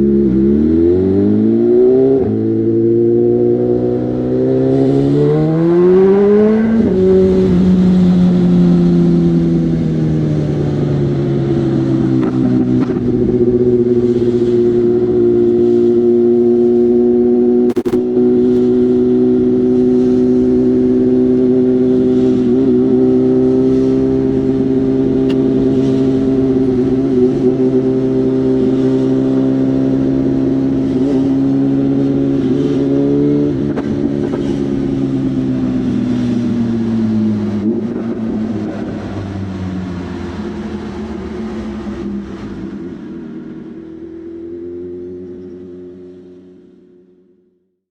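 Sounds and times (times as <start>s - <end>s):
motorcycle engine running: 0.0s - 47.1s
sharp click: 17.7s - 18.6s.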